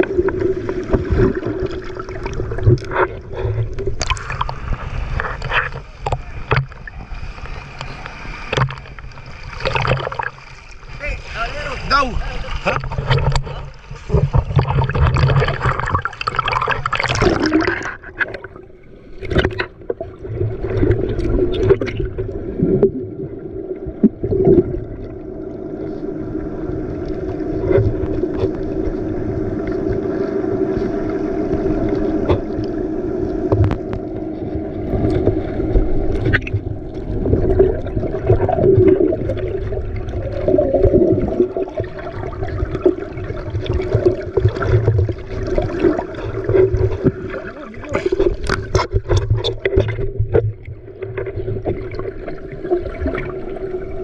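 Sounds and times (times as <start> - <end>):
water splashing against hull: 0.0 - 54.0
boat engine drone: 25.2 - 40.2.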